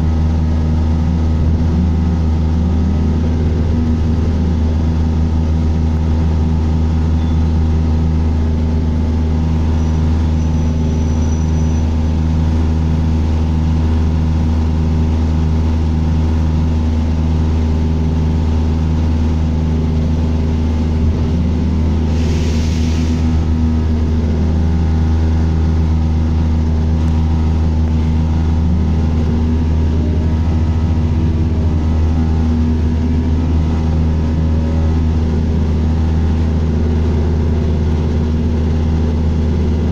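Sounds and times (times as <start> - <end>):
pulsing low tone: 0.0 - 22.1, 23.2 - 39.9
bus engine running: 0.0 - 39.9
brief hiss: 22.1 - 23.2.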